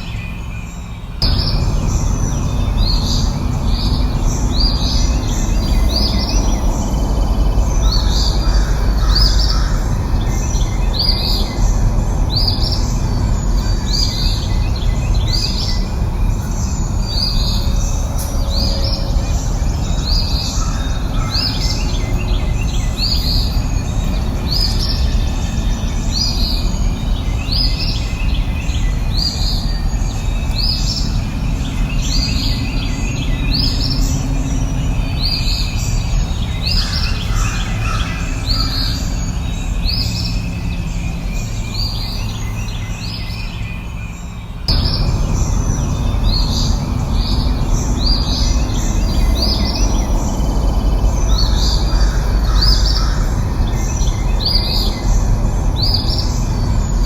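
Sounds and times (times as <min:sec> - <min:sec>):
low rumbling background: 0:00.0 - 0:57.0
songbird chirping: 0:00.0 - 0:57.0.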